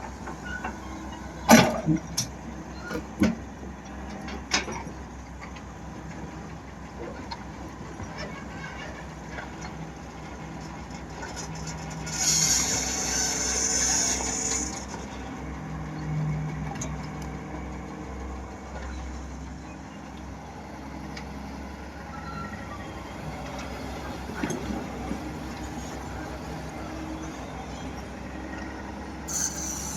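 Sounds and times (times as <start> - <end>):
diesel engine rumbling: 0.0 - 29.9.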